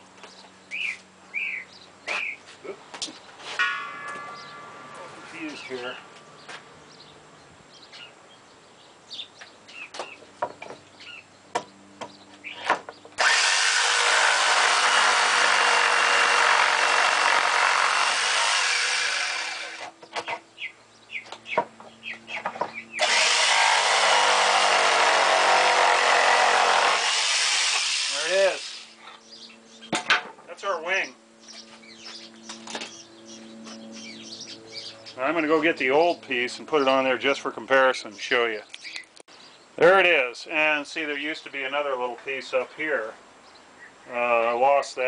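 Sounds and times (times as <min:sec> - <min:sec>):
electric jigsaw cutting wood: 0:13.2 - 0:19.9, 0:23.0 - 0:29.0.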